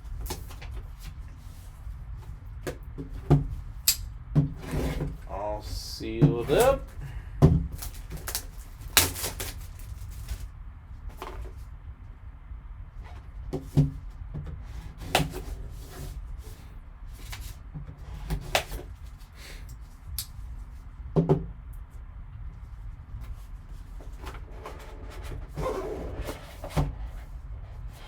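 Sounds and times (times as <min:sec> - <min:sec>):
low steady hum: 0:00.0 - 0:28.0
cardboard and wrapper clicks: 0:07.7 - 0:10.5.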